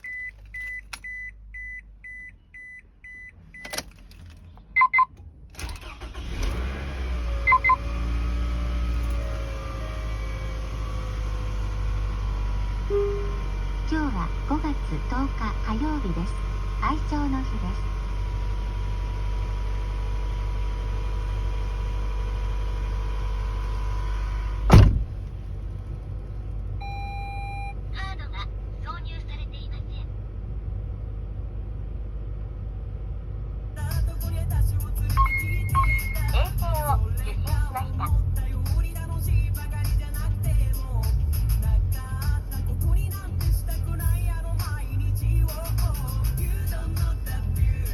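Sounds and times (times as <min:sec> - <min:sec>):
car warning chime beeping: 0:00.0 - 0:03.9, 0:04.8 - 0:05.2, 0:07.5 - 0:07.9, 0:12.8 - 0:16.0, 0:26.8 - 0:27.8, 0:35.1 - 0:36.6
car engine starting and idling: 0:00.0 - 0:47.9
electronic beep: 0:04.8 - 0:05.1, 0:07.5 - 0:07.8, 0:12.9 - 0:13.5, 0:35.2 - 0:36.3
engine cranking: 0:05.5 - 0:08.0
clunk: 0:24.7 - 0:25.4.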